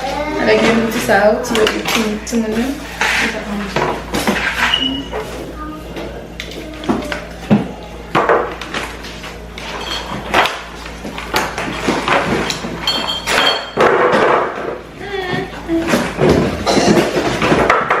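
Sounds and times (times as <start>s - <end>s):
dishes and containers knocking: 11.3s - 14.8s, 15.4s - 18.0s
glass clinking: 12.8s - 13.9s.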